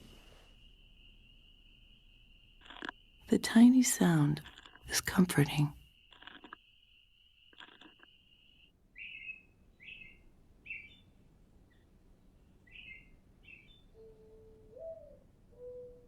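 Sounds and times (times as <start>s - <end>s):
small bird chirping: 0.6s - 16.0s
low hoot: 13.9s - 16.0s.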